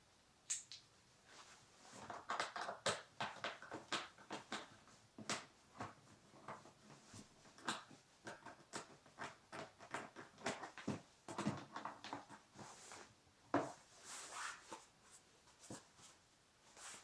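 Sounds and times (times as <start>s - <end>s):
faint clicks and taps: 2.0s - 13.8s.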